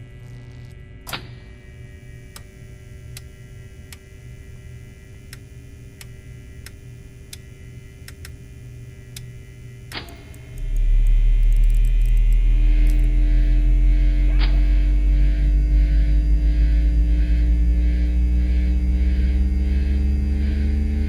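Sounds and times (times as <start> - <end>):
electrical hum: 0.0 - 21.0
sharp clicks: 6.0 - 8.4
loud low bass tone: 10.5 - 21.0.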